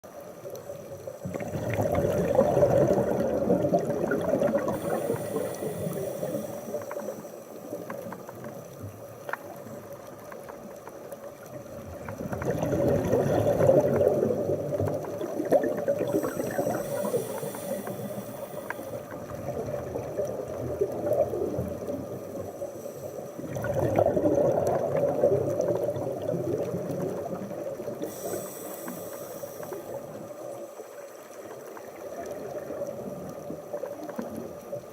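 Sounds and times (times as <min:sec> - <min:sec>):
gurgling exhaled bubbles: 0:01.0 - 0:08.9, 0:10.6 - 0:34.9
regulator inhale hiss: 0:04.5 - 0:08.0, 0:16.0 - 0:19.3, 0:22.6 - 0:23.4, 0:28.0 - 0:30.8.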